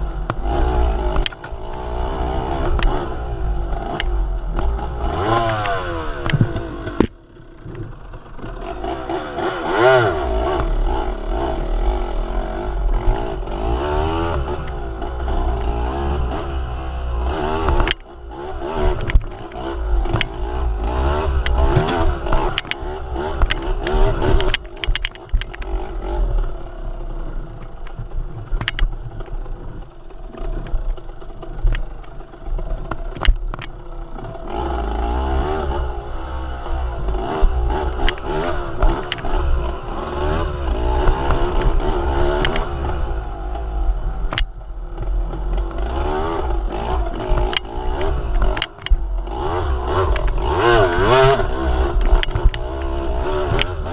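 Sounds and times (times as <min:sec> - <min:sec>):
vehicle engine rumbling: 0:00.0 - 0:53.9
clicks and rattles: 0:01.1 - 0:01.8, 0:03.8 - 0:08.7, 0:17.6 - 0:18.1, 0:18.8 - 0:20.4, 0:21.3 - 0:25.8, 0:27.4 - 0:34.5, 0:36.7 - 0:40.0, 0:40.6 - 0:43.6, 0:44.2 - 0:49.3, 0:50.0 - 0:53.9.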